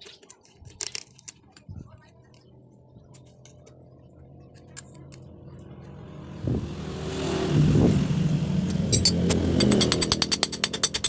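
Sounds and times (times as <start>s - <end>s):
vehicle engine approaching: 2.5s - 11.0s.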